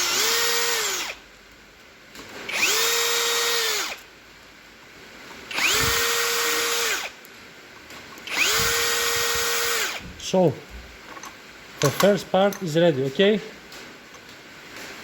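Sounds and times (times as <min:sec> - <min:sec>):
power drill whining: 0:00.0 - 0:01.2, 0:02.5 - 0:04.0, 0:05.5 - 0:07.2, 0:08.2 - 0:10.1.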